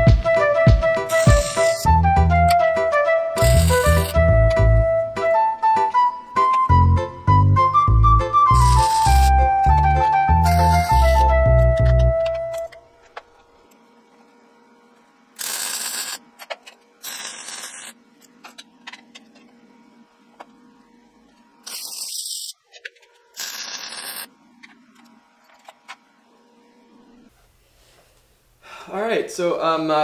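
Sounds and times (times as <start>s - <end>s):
short bursts of hiss: 1.1s - 1.9s.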